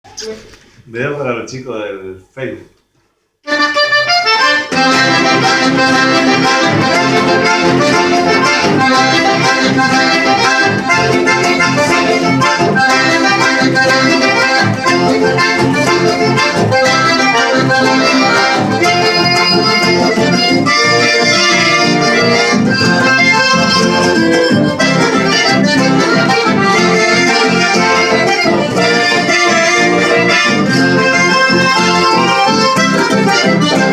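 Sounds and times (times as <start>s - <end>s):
accordion playing: 3.4s - 33.9s.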